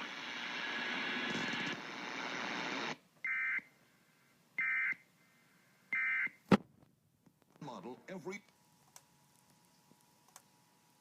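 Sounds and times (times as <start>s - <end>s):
static hiss: 0.0s - 3.0s.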